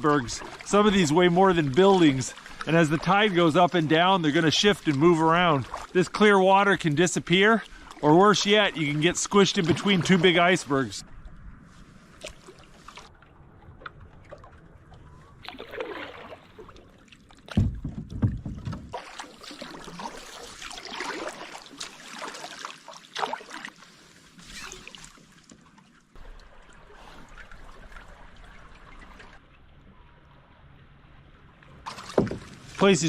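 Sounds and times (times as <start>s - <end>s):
paddle strokes and splashing: 0.0s - 33.0s
heavy low thump: 17.5s - 19.0s.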